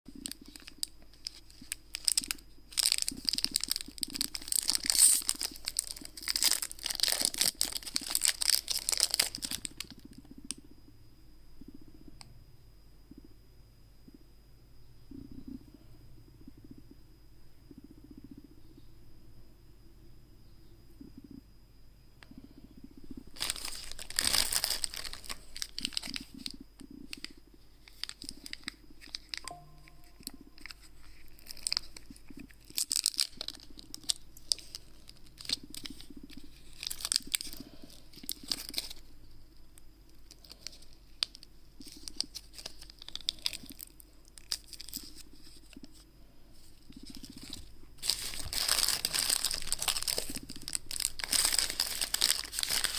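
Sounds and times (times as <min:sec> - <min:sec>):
wrapper tearing and crinkling: 0:00.1 - 0:10.1, 0:23.3 - 0:29.5, 0:30.1 - 0:39.1, 0:40.3 - 0:45.8, 0:47.0 - 0:52.9.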